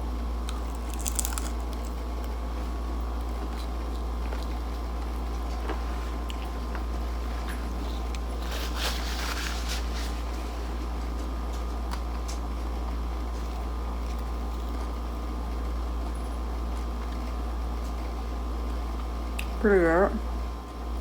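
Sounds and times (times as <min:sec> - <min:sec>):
steady low hum: 0:00.0 - 0:21.0
chewing crunchy fried fish: 0:00.3 - 0:15.0.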